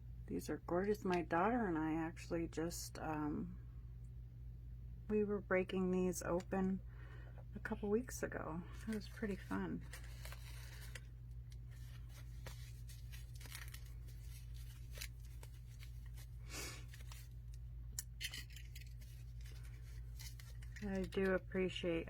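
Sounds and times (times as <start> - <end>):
steady low hum: 0.0 - 22.0
wrapping rustling and crinkling: 8.7 - 22.0.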